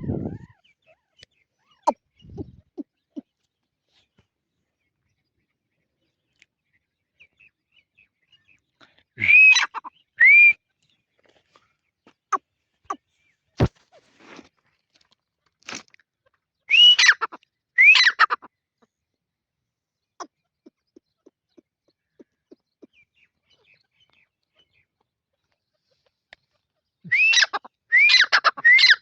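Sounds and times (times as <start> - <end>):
francolin whistled calls: 16.7 - 17.2, 17.8 - 18.2, 27.1 - 29.0.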